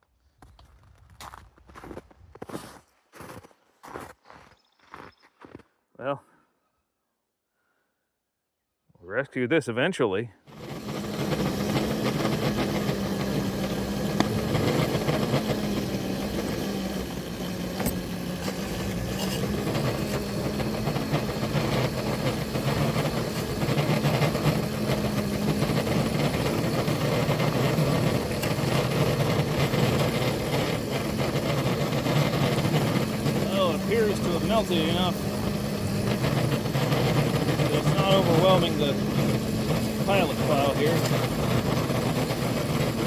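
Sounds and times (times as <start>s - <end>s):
locomotives running under load: 10.5s - 43.0s.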